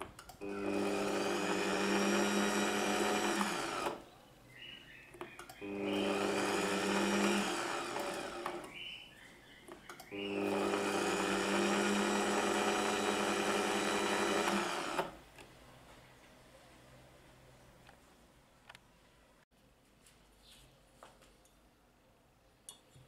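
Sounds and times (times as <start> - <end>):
meat mincer motor humming: 0.4 - 4.0, 5.6 - 8.7, 10.1 - 15.2.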